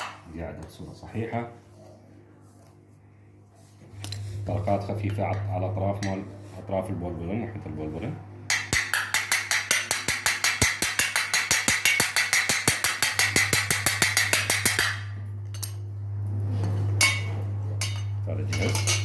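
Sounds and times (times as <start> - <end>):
rapid light metal taps: 8.5 - 15.0.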